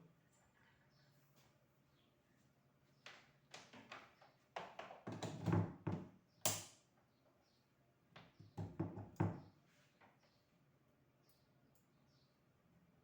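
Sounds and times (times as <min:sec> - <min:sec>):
fan being handled knocks and rattles: 0:03.1 - 0:06.7, 0:08.2 - 0:09.5.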